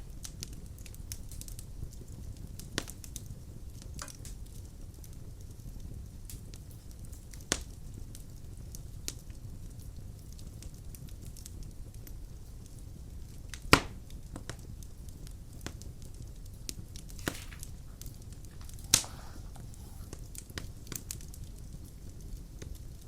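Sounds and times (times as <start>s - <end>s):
fire popping: 0.0s - 23.0s
wood fire crackling: 0.0s - 23.0s.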